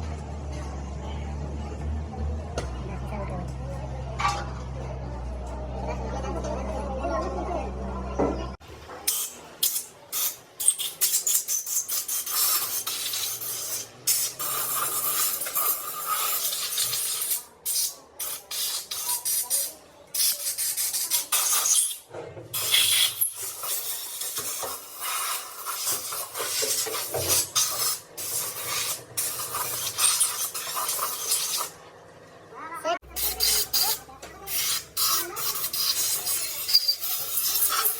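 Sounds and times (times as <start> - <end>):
scraping and rasping on metal: 9.1 - 31.8, 33.1 - 37.9.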